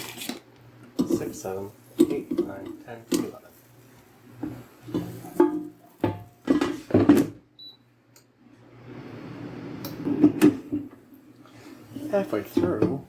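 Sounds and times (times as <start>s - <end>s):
air fryer basket clatter: 1.0s - 3.6s, 4.4s - 7.4s, 12.0s - 13.0s
air fryer fan whoosh: 8.6s - 13.0s.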